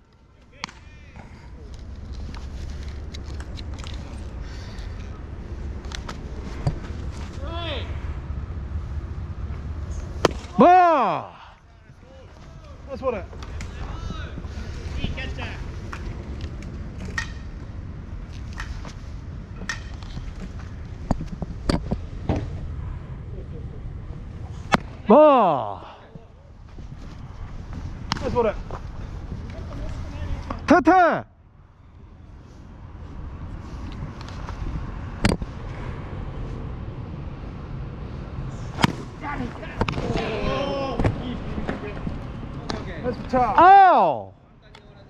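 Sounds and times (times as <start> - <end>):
low outdoor rumble: 0.0 - 45.0
baseball smacking into glove: 10.2 - 10.6, 24.7 - 24.9, 38.8 - 39.1.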